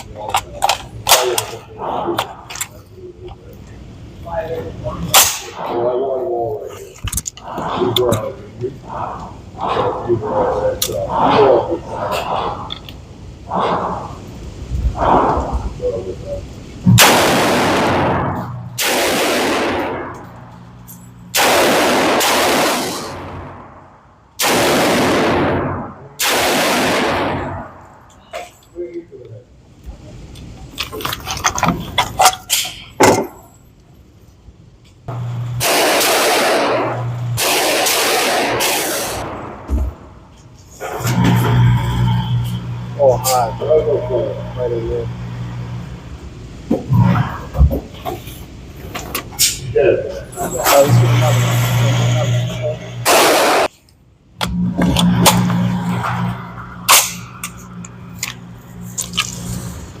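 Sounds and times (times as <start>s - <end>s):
loud steady rushing noise: 0.0s - 28.6s, 35.1s - 53.8s, 54.5s - 60.0s
low hum: 0.0s - 32.2s, 32.8s - 60.0s
gunshots: 5.1s - 6.0s, 16.9s - 20.4s, 21.3s - 27.9s, 35.6s - 40.2s, 50.6s - 53.7s.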